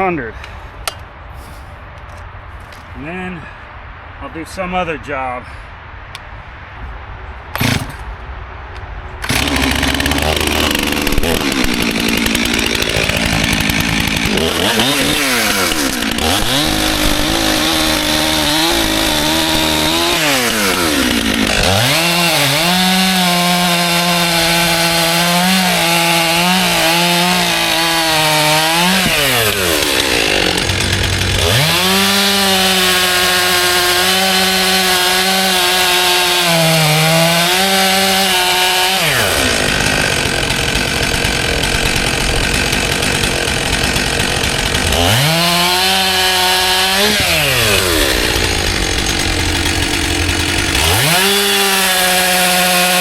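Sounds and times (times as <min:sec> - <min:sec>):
chainsaw cutting logs: 0:07.6 - 0:08.2, 0:09.2 - 0:53.0.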